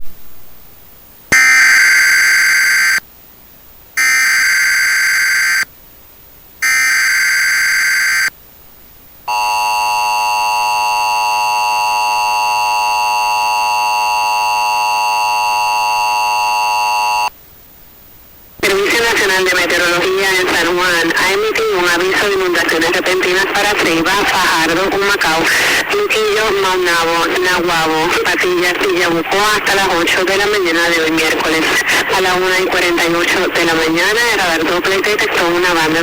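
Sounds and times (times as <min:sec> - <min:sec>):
two-tone attention signal: 0:01.3 - 0:03.0, 0:04.0 - 0:05.7, 0:06.6 - 0:08.3.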